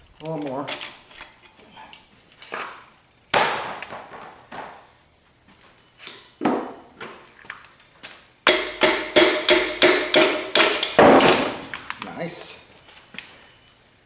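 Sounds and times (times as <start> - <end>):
hammer striking metal: 8.5 - 11.8.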